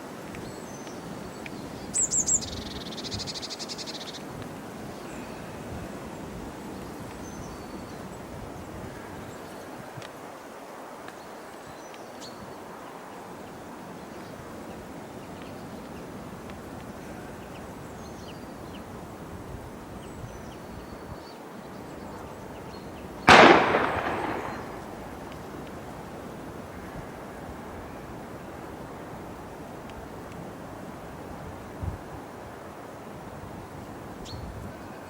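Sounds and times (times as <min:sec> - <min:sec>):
loud bang: 0:23.3 - 0:25.1.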